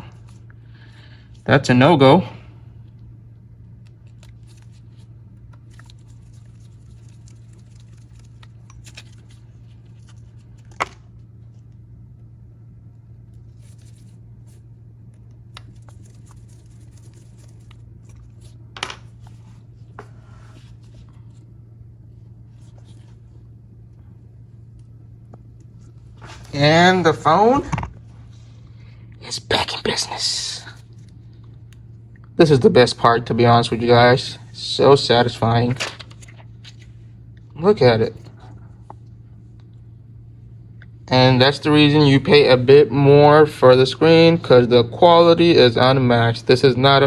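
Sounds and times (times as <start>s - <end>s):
steady low hum: 0.0s - 47.0s
phone being handled: 3.7s - 11.8s, 13.1s - 21.5s.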